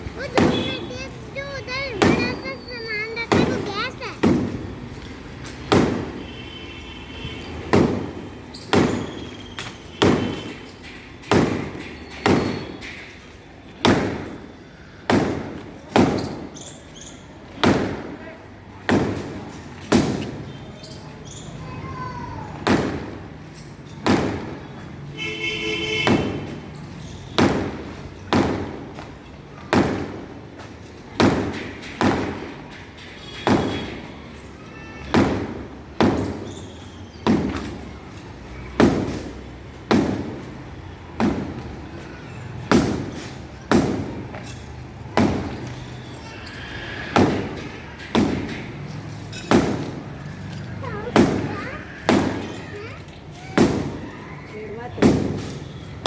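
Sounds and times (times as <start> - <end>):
hammer blows dull thuds: 0.0 - 4.8, 5.6 - 6.3, 7.4 - 13.1, 13.8 - 16.6, 22.5 - 23.4, 24.0 - 34.1, 35.1 - 45.9, 47.1 - 54.2.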